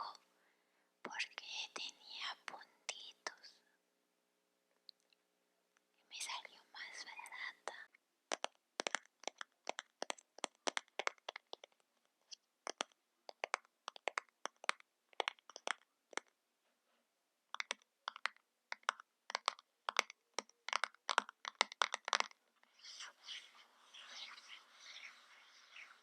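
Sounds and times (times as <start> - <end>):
makeup packaging clicking: 17.5 - 22.4.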